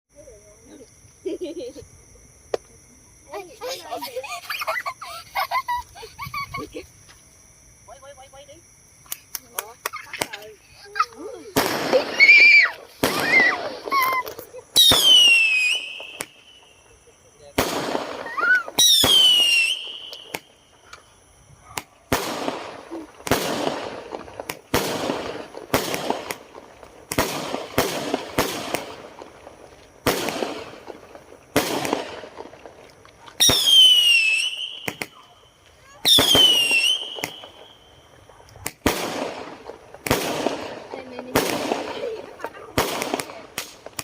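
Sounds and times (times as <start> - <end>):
fireworks bangs: 9.4 - 44.0
firework whistle falling in pitch: 14.8 - 16.7, 18.2 - 20.4, 33.4 - 35.1, 36.1 - 37.8.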